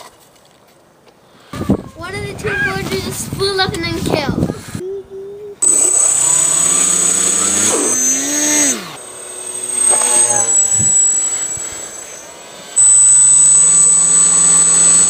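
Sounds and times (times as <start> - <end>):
high electronic whine: 5.6 - 15.0
model plane motors whining: 5.6 - 15.0.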